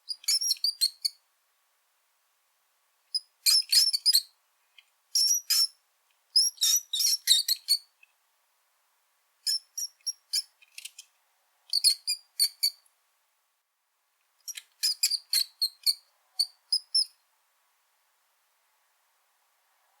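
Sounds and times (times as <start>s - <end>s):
rat squeaking: 0.1s - 1.2s, 3.2s - 4.3s, 5.2s - 5.8s, 6.4s - 7.9s, 9.5s - 11.0s, 11.7s - 12.8s, 14.5s - 17.2s.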